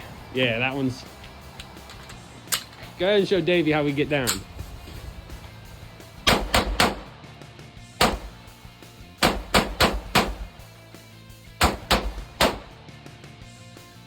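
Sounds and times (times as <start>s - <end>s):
background music: 0.0s - 14.0s
pistol shots: 6.2s - 7.2s, 8.0s - 8.5s, 9.2s - 10.6s, 11.6s - 12.8s.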